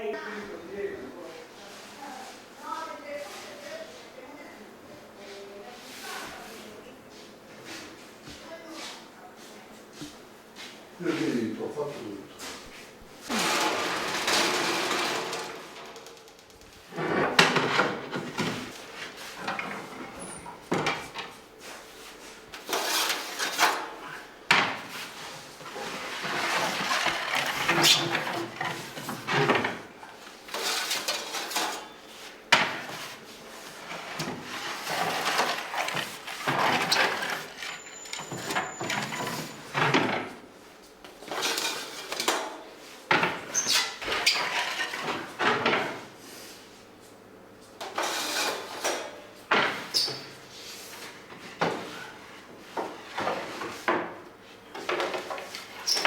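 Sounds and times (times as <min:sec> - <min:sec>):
utensils and trays clattering: 0:13.2 - 0:16.3, 0:16.9 - 0:21.9, 0:22.5 - 0:40.5, 0:41.2 - 0:46.1, 0:47.8 - 0:50.4.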